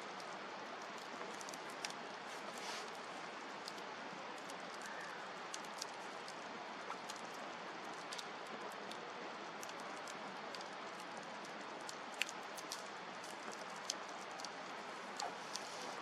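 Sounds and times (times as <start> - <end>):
fire crackling and popping: 0.1 - 16.0
campfire hissing: 1.8 - 6.8.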